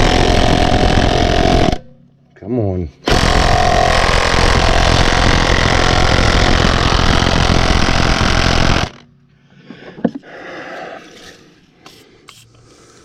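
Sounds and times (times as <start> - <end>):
impact wrench hammering: 0.0 - 2.0, 3.1 - 9.1.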